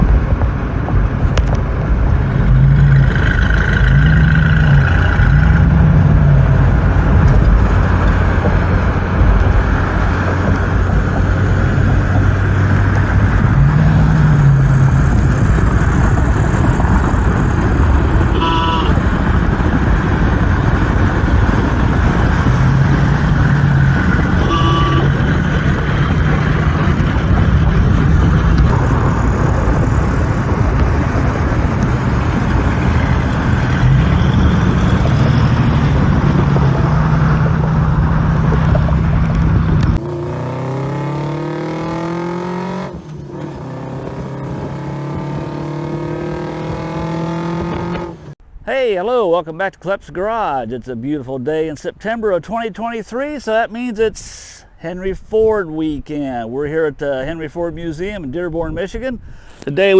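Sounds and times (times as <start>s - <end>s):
vehicle road and engine noise: 0.0s - 48.6s
horn toots: 18.2s - 19.7s, 22.3s - 25.6s.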